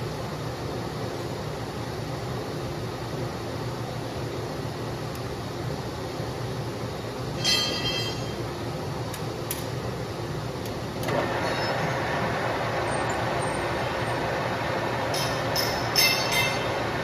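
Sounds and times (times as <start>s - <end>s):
ringing metallic squeal: 7.4s - 8.4s, 15.2s - 16.8s
metal lathe cutting steel: 11.1s - 17.0s.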